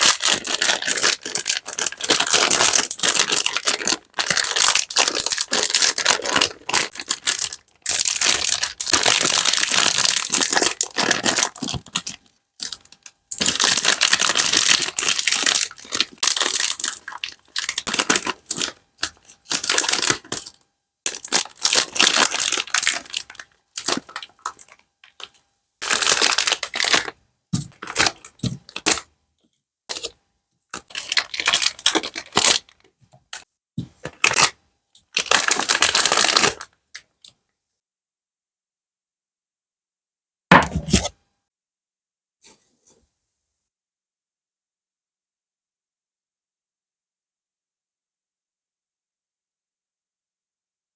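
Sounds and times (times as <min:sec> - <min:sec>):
plastic packaging crinkling: 0:00.0 - 0:25.2, 0:25.8 - 0:29.0, 0:30.8 - 0:32.9, 0:34.0 - 0:36.7.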